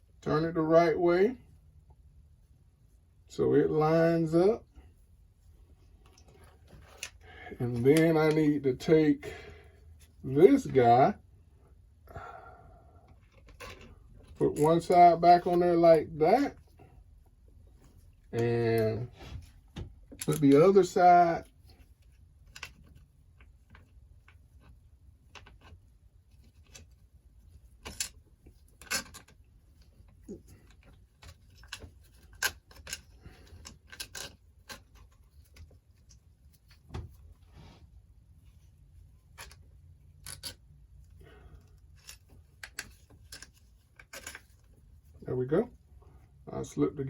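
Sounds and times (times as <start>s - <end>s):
small metal parts clicking: 20.1s - 20.6s, 27.8s - 29.4s, 30.6s - 35.6s, 39.3s - 40.6s, 41.6s - 44.7s.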